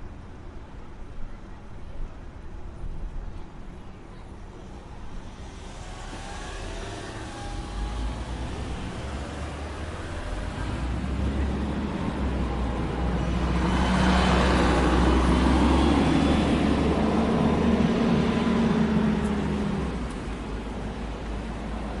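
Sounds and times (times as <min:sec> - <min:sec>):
motor vehicle passing: 0:04.9 - 0:22.0.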